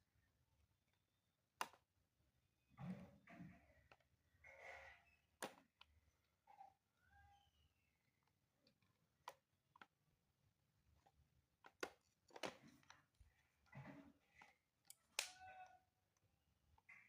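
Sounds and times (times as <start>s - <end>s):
faint clicks and taps: 7.8s - 10.2s.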